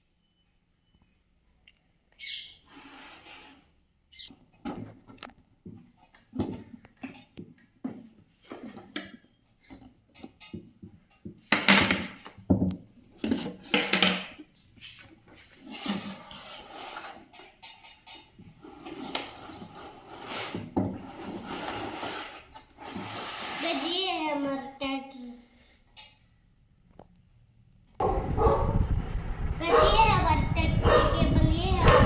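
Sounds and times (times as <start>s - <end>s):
cardboard and plastic rustling: 18.3s - 24.2s.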